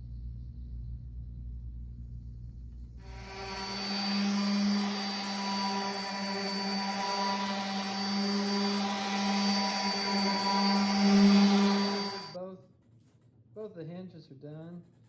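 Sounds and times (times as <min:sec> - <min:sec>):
sewing machine motor humming: 0:03.1 - 0:12.4.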